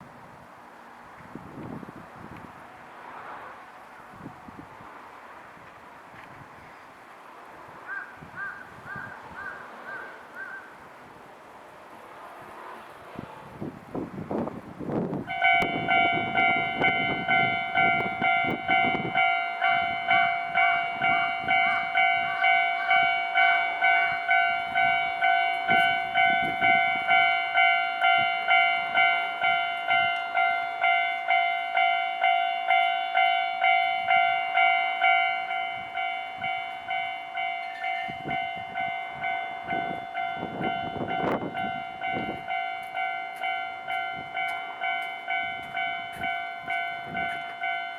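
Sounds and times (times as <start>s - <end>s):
level crossing warning bell: 15.2s - 47.9s.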